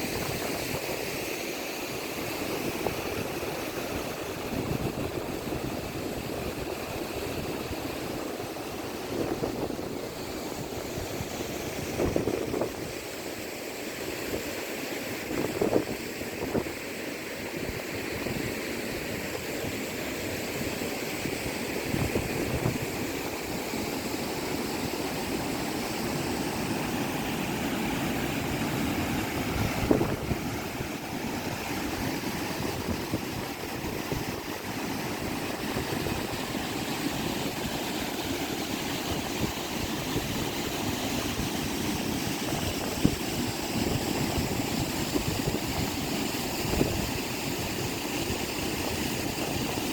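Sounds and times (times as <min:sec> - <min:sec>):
moving water: 0:00.0 - 0:49.9
wind buffeting microphone: 0:28.8 - 0:34.6.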